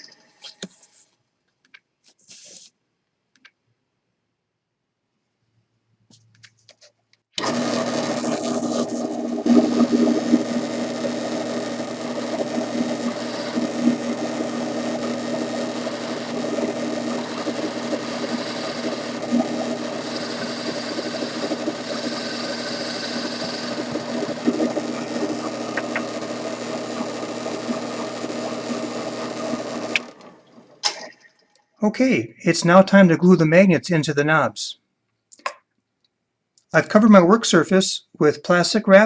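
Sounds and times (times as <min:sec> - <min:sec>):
drill press drilling wood: 0:07.4 - 0:30.4.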